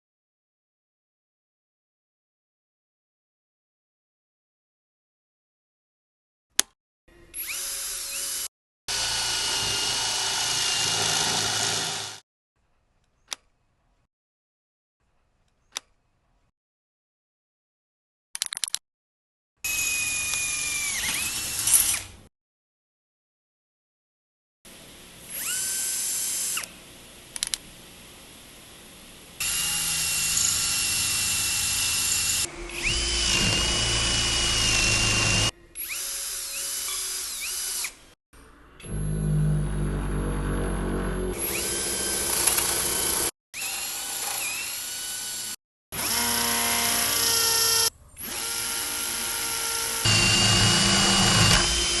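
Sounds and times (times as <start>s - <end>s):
cordless drill motor whining: 7.3s - 12.2s, 25.3s - 26.7s, 29.4s - 38.0s, 38.8s - 52.0s
heavy rough low rumble: 38.9s - 41.4s.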